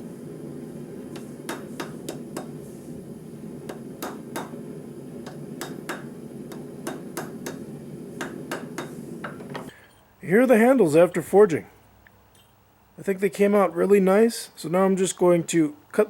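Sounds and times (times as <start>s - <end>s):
hammer striking metal on anvil: 1.2s - 2.6s, 3.7s - 4.6s, 5.2s - 9.6s.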